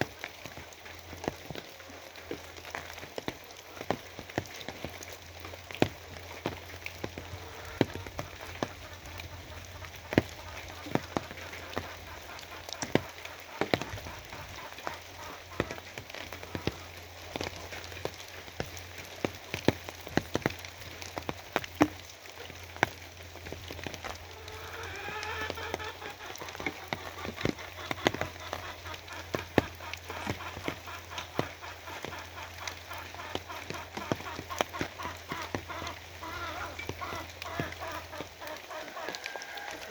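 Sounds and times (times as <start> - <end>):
rain drops ticking on hard surface: 0.0 - 39.9
wavering animal call: 24.2 - 39.9.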